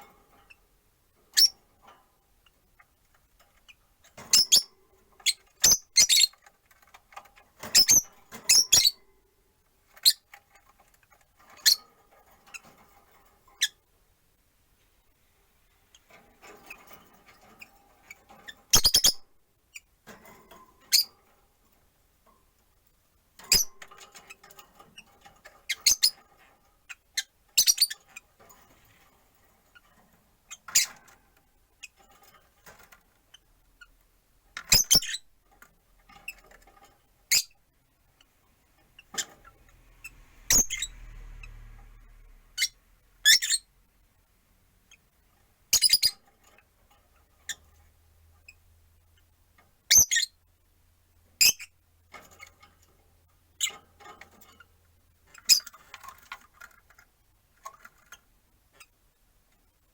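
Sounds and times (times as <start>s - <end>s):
faint low rumble: 39.4s - 44.4s.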